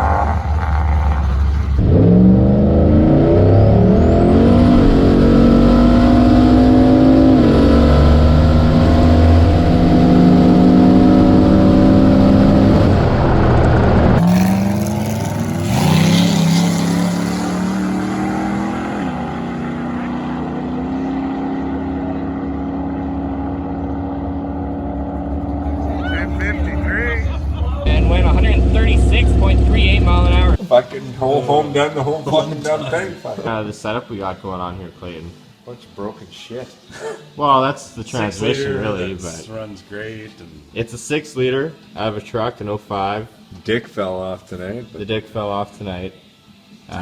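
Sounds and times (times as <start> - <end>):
car engine accelerating hard: 0.0 - 30.6
high turbo whine: 0.0 - 30.6.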